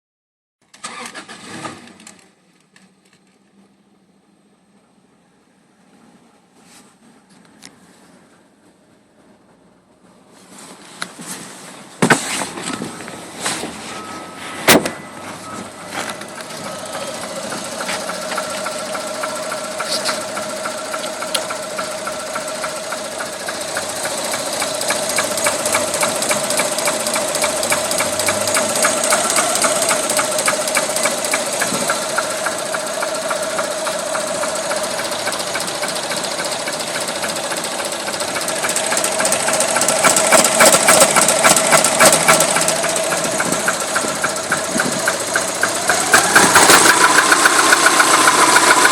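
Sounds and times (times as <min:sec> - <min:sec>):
car engine ticking: 0:15.7 - 0:48.9.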